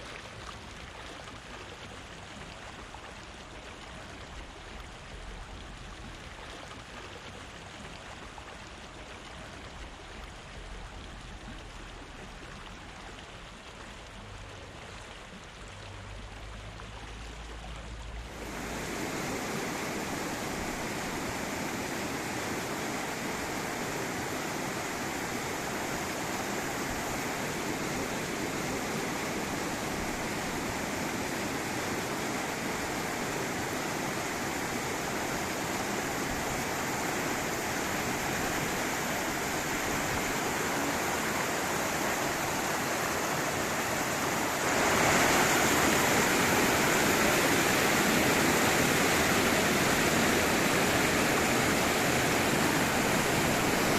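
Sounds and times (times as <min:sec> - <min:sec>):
river water rushing over rocks: 0:16.7 - 0:53.9.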